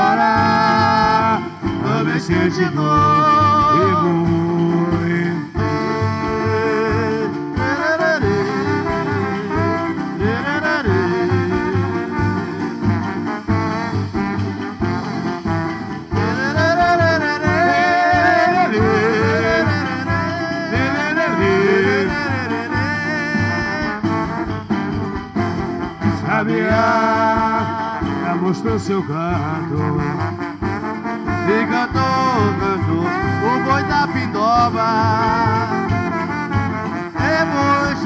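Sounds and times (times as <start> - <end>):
sung verses: 0.0 - 24.4, 25.9 - 38.0
steady drum beat: 0.0 - 38.0.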